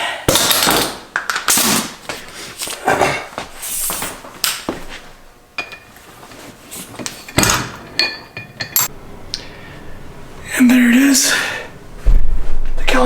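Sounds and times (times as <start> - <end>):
metal tools clinking on caliper: 7.9 - 8.9.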